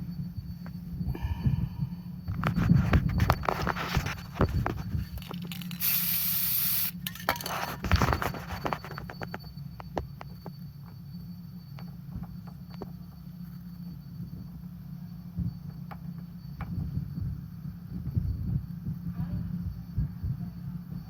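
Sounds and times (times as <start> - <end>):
aerosol spray burst: 5.5 - 7.0.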